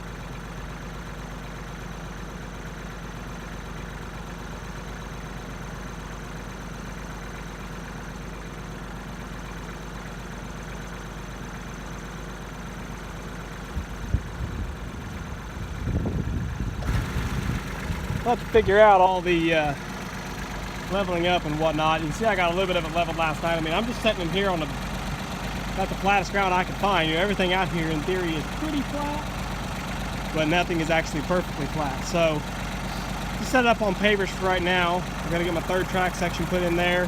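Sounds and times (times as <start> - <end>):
engine idling: 0.0 - 37.0.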